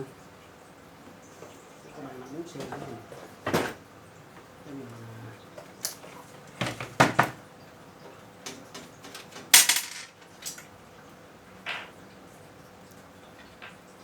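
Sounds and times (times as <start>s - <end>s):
computer parts clicking and clattering: 8.4s - 10.6s.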